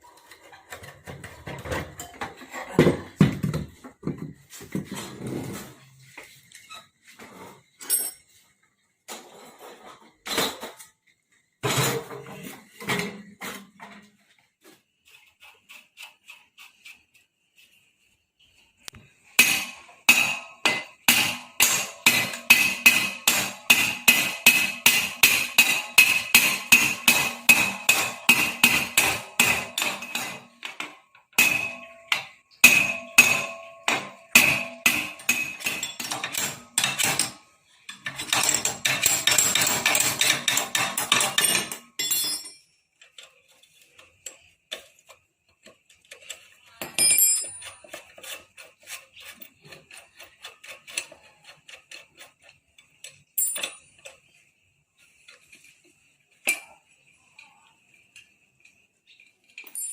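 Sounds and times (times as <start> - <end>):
hammer striking metal: 19.4 - 37.4.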